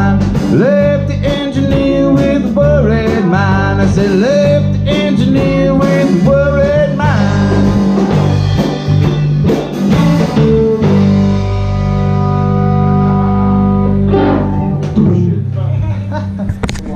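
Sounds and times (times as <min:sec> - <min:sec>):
person singing: 0:00.0 - 0:08.1
blues guitar: 0:00.0 - 0:16.9.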